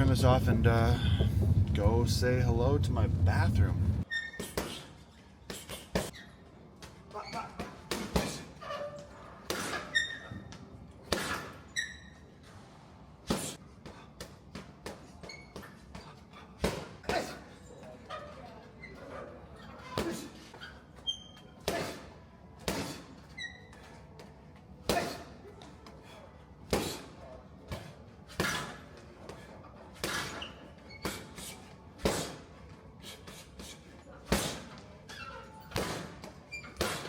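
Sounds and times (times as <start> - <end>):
irregular knocks and thuds: 0.4 - 1.9.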